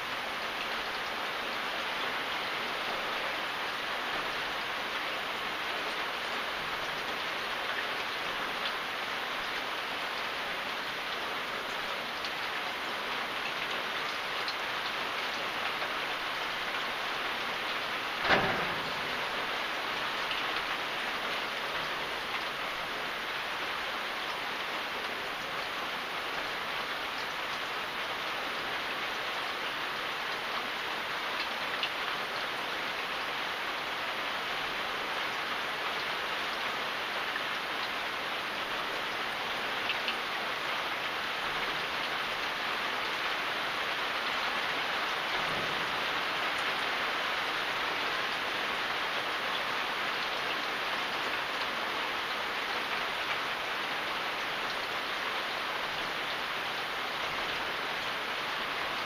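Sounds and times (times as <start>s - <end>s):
steady rain falling: 0.0s - 59.0s
raindrop ticks: 13.4s - 22.6s, 29.6s - 32.2s.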